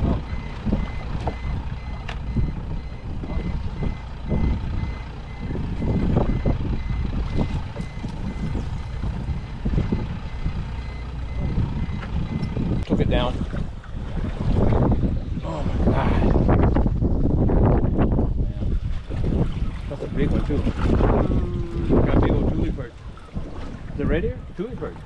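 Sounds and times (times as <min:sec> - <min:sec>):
high electronic beeping: 0:00.0 - 0:12.9
waves thumping against boat: 0:00.0 - 0:25.0
wind rumble on microphone: 0:00.0 - 0:25.0.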